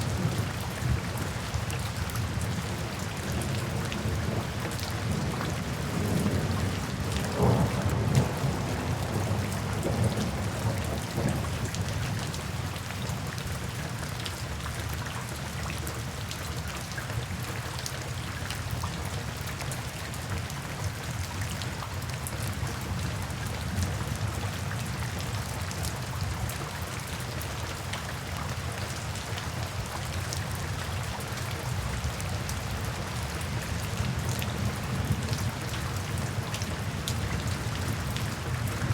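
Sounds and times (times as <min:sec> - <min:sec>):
raindrops ticking on a surface: 0:00.0 - 0:38.9
steady rainfall: 0:00.0 - 0:38.9.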